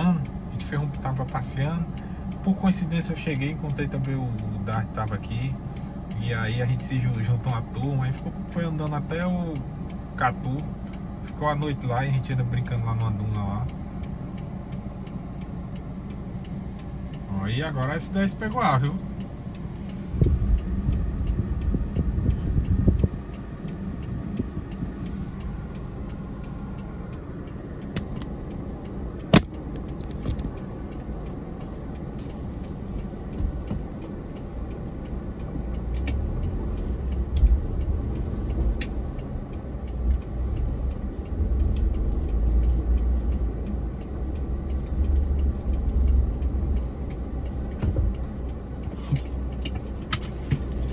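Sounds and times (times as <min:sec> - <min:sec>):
off-road vehicle engines rumbling: 0:00.0 - 0:50.9
sharp knock: 0:29.3 - 0:29.6.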